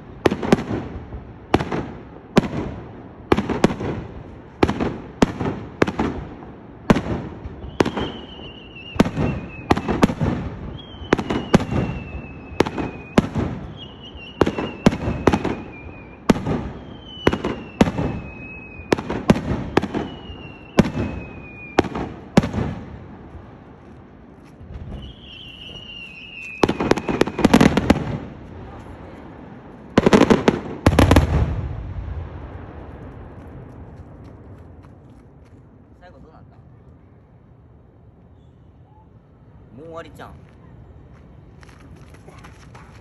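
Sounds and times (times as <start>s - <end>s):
fireworks bangs and crackling: 0.0s - 36.4s
falling firework whistle: 7.4s - 22.0s, 24.7s - 27.9s, 38.2s - 39.4s.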